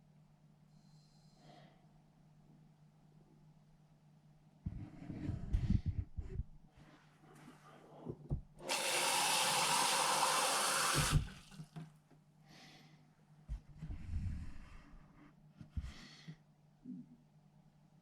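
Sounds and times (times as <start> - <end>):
water running into container: 8.6 - 11.8.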